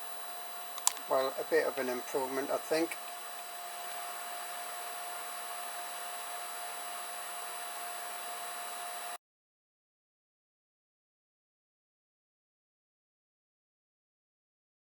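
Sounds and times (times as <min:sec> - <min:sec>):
fan whirring with hum: 0:00.0 - 0:09.2.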